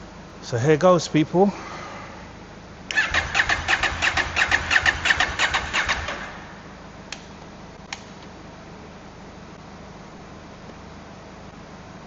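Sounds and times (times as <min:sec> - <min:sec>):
motorcycle engine cranking on starter: 0:02.9 - 0:06.5.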